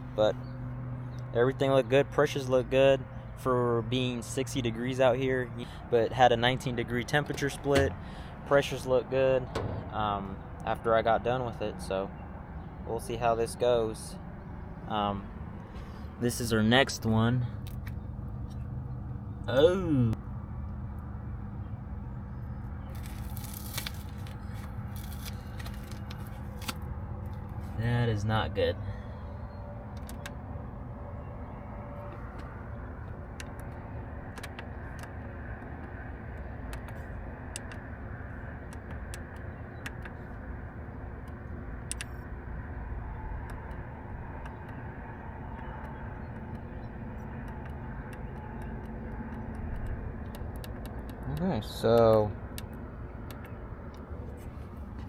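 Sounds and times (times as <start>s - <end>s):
rustling and scraping: 22.9s - 27.8s
sharp clicks: 32.3s - 37.9s, 38.6s - 40.2s, 41.2s - 42.3s, 43.4s - 54.2s.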